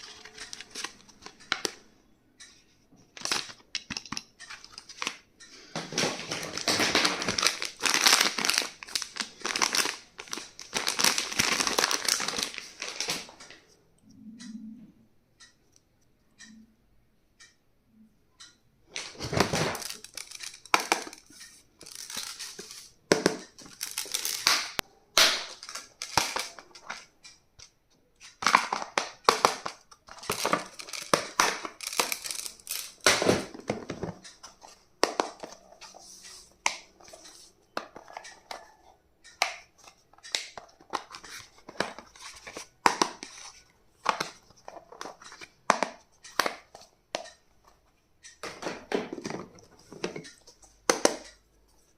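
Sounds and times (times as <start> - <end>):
packaging crinkling and rustling: 5.8 - 13.4, 19.0 - 21.3, 23.7 - 24.8, 28.3 - 34.2.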